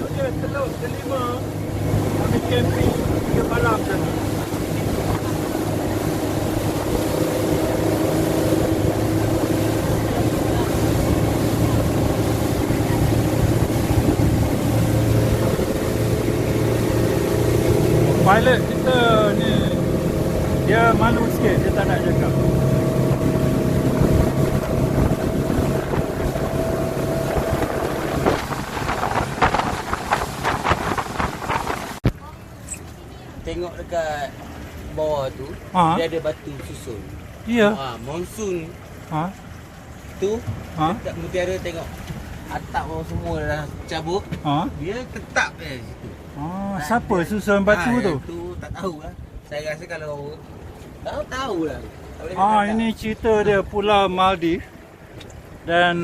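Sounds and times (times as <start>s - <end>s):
wind buffeting microphone: 0.0s - 32.6s
motorboat engine running: 0.0s - 56.0s
rushes of wind or water: 0.0s - 56.0s.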